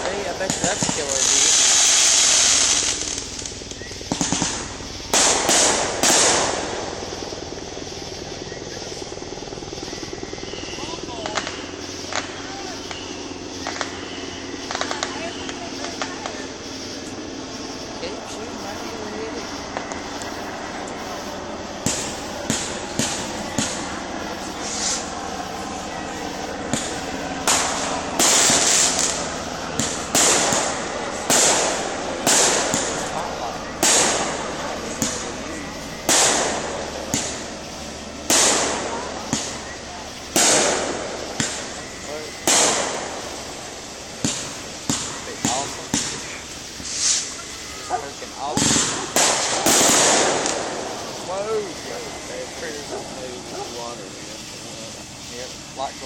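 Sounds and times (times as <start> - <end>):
firework crackle: 0.0 - 56.0
loud firework bangs: 0.0 - 56.0
faint firework pops: 2.7 - 6.6, 11.2 - 14.0, 21.8 - 23.9, 26.7 - 37.4, 38.3 - 39.6, 40.4 - 41.6, 44.2 - 47.2.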